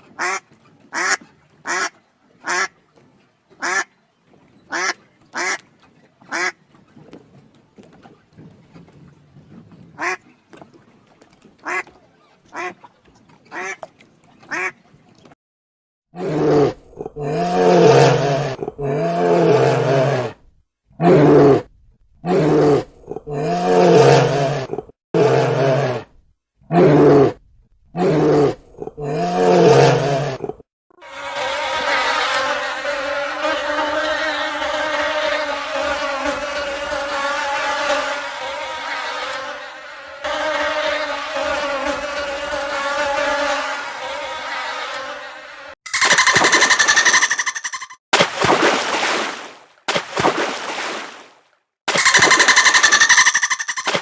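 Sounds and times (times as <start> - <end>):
duck quacks: 0.0 - 2.8, 3.6 - 3.9, 4.7 - 5.6, 6.3 - 6.6, 10.0 - 10.2, 11.6 - 11.9, 12.5 - 12.8, 13.5 - 13.8, 14.5 - 14.8, 45.9 - 48.0, 51.9 - 54.0
drawn-out animal calls: 0.0 - 7.4, 11.6 - 13.8, 45.9 - 48.0, 51.9 - 54.0
insect buzz: 32.8 - 45.3.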